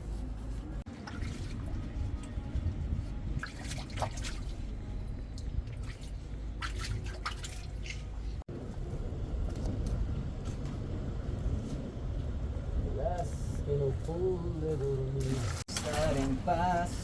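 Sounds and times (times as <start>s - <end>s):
steady low rumble: 0.0s - 17.0s
water splashing and dripping: 0.9s - 2.4s, 3.3s - 8.4s, 15.2s - 16.6s.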